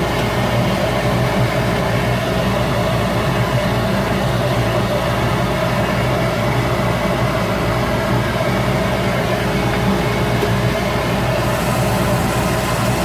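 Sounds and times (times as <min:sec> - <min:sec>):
wood lathe running: 0:11.2 - 0:13.0.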